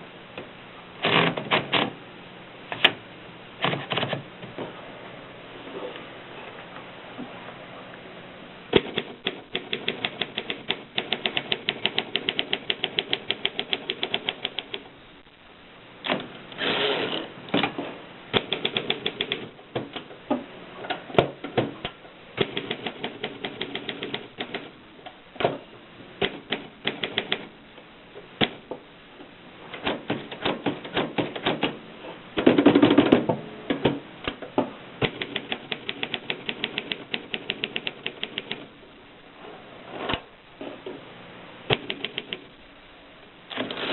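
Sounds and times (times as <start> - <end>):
typewriter mechanical noises: 1.0 - 2.0, 3.6 - 4.3, 8.7 - 14.9, 18.3 - 20.1, 22.4 - 24.8, 26.2 - 27.5, 29.8 - 31.8, 35.0 - 38.7, 41.7 - 42.5.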